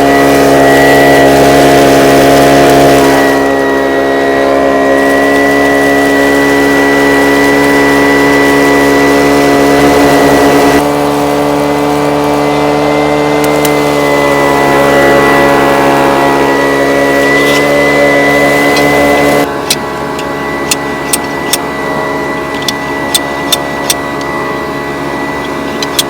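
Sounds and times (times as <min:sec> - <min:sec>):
small engine with whine: 0:00.0 - 0:26.0.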